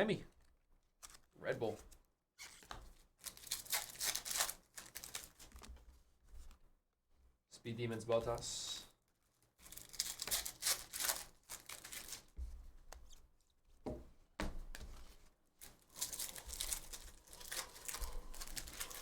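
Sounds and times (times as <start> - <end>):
cards rustling in hand: 0.4 - 6.6, 9.2 - 13.2, 14.8 - 19.0
trading card packs tearing: 2.4 - 5.7, 9.6 - 12.3, 15.6 - 19.0.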